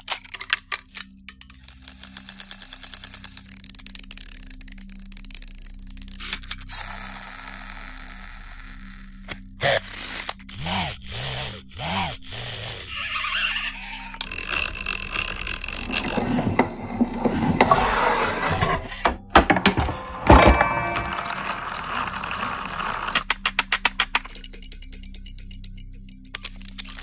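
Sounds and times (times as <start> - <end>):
sharp mechanism clicks: 0.0 - 8.0, 9.2 - 13.0, 13.6 - 16.4, 20.6 - 27.0
clockwork whirring: 9.6 - 23.5
small metal parts rattling: 13.9 - 17.2
scraping strokes: 15.6 - 23.2.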